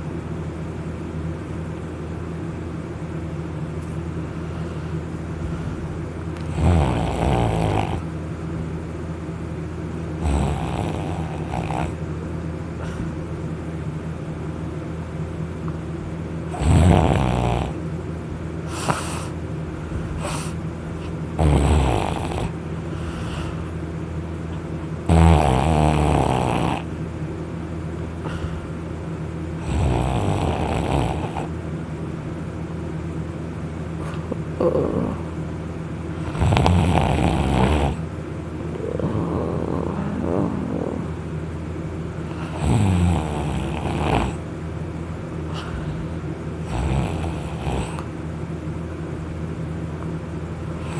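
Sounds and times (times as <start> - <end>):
steady low hum: 0.0 - 50.9
person snoring loudly: 6.4 - 8.1, 10.2 - 12.0, 16.5 - 17.8, 21.4 - 22.6, 25.1 - 26.9, 29.6 - 31.5, 34.6 - 35.3, 36.2 - 38.0, 38.7 - 41.3, 42.3 - 44.4, 46.6 - 48.1.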